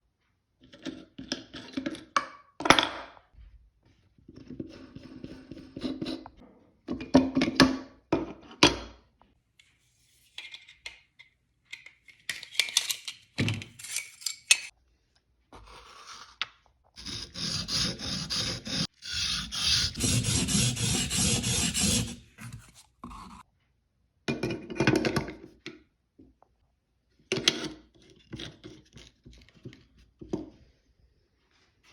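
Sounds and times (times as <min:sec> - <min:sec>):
steel blades scraping on abrasive: 0:17.0 - 0:23.4.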